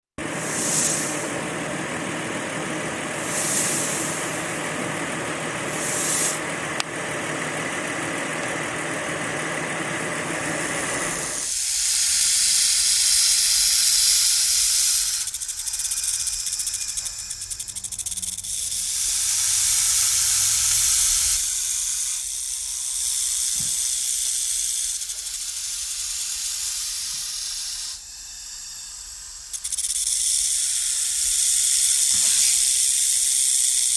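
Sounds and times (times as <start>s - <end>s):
snake hissing: 0.3s - 1.5s, 3.2s - 4.9s, 5.6s - 6.4s, 10.0s - 21.6s.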